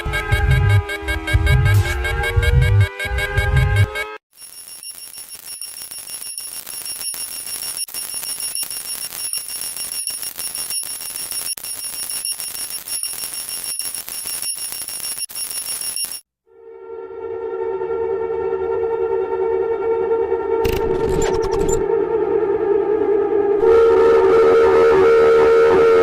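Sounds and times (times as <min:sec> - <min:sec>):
high-pitched electronic alarm tone: 0:00.0 - 0:16.2.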